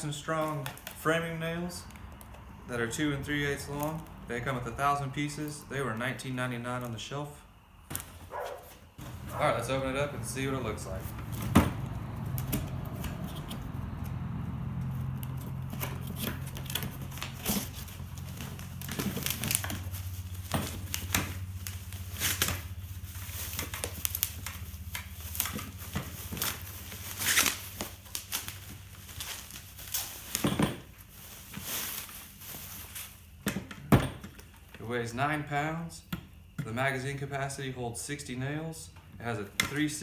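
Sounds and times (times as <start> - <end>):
knocks and clunks: 11.1 - 13.6
packaging crinkling and tearing: 15.8 - 30.4.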